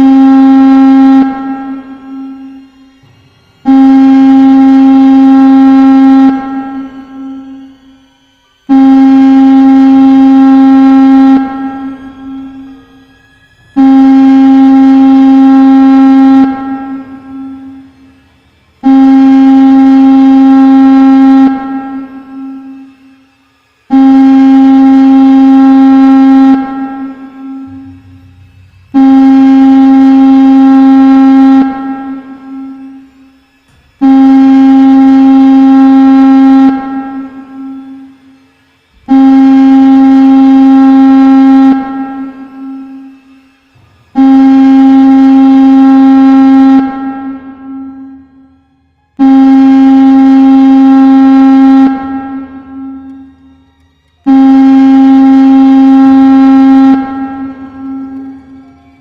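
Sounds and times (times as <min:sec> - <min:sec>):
buzzy alarm horn blasts: 0:00.0 - 0:59.0.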